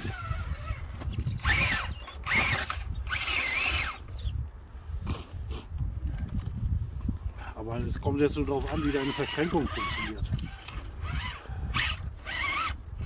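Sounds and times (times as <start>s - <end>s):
electric motor whining: 0.0s - 4.4s, 8.4s - 13.0s.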